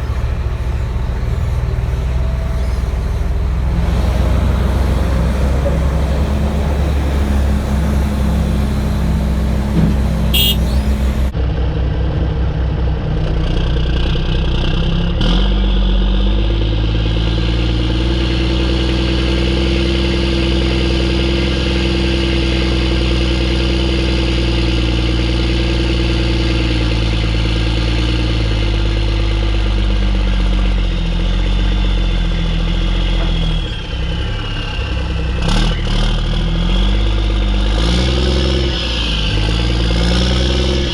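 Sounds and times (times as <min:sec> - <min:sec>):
truck diesel engine running: 0:00.0 - 0:11.3
turbo whistle: 0:09.8 - 0:11.3.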